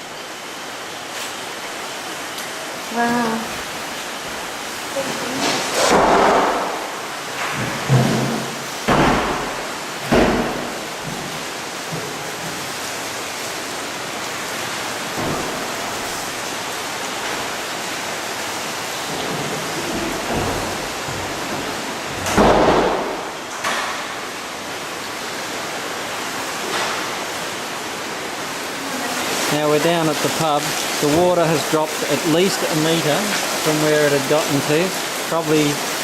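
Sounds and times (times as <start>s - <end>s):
floodwater rushing: 0.0s - 36.0s.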